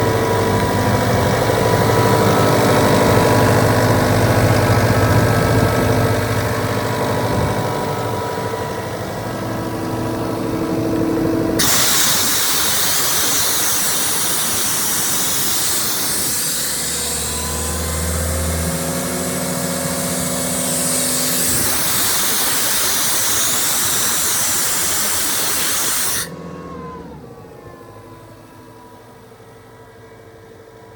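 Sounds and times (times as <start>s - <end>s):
air compressor engine running: 0.0s - 30.9s
compressed air hissing: 11.6s - 26.3s.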